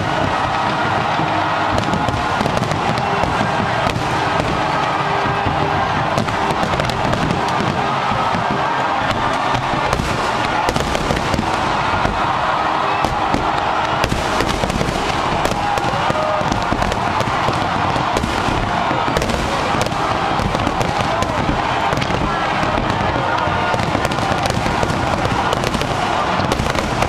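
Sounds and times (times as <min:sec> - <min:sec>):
fireworks bangs: 0:00.0 - 0:27.0
fireworks crackling and popping: 0:00.0 - 0:27.0.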